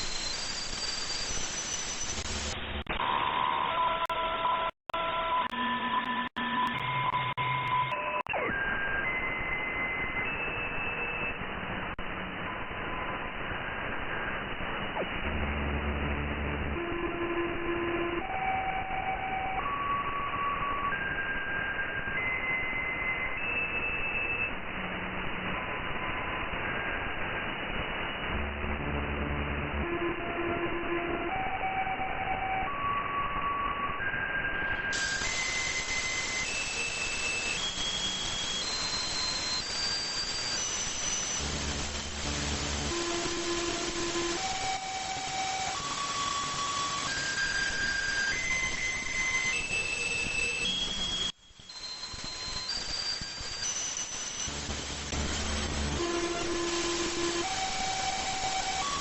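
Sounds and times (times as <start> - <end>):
radio receiver hiss: 0.0 - 7.2, 10.0 - 17.6, 34.6 - 59.0.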